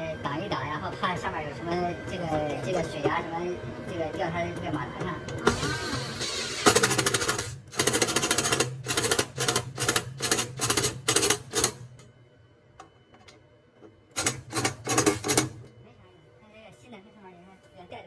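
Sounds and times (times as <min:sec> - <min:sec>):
rapid mechanical clatter of tool: 0:06.5 - 0:11.8, 0:14.2 - 0:15.5.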